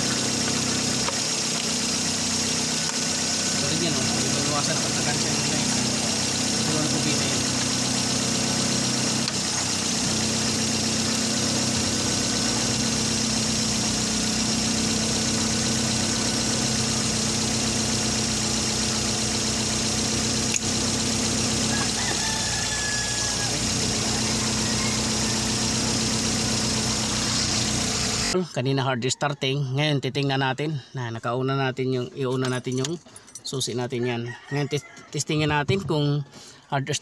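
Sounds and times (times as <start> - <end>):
car engine idling: 0.0 - 28.4.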